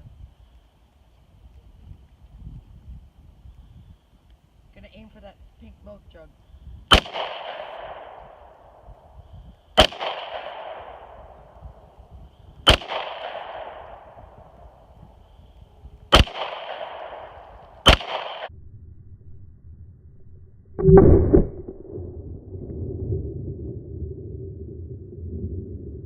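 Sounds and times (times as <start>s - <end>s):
pistol shots with echo: 6.9s - 8.2s, 9.8s - 11.4s, 12.6s - 14.2s, 16.1s - 18.5s.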